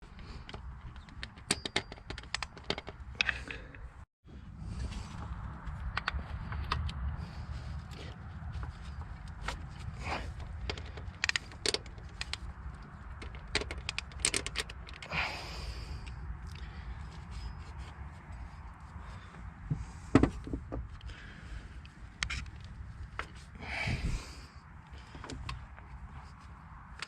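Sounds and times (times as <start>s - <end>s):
hand work clicks and scrapes: 0.1s - 4.0s, 4.8s - 19.0s, 21.8s - 24.0s.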